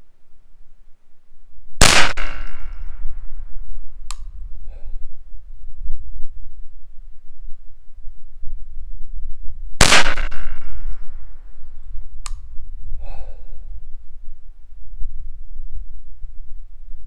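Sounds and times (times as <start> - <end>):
steady low rumble: 0.0 - 17.0
rifle shot: 1.8 - 4.5, 9.8 - 12.6
sharp click: 4.0 - 4.4, 12.2 - 12.6.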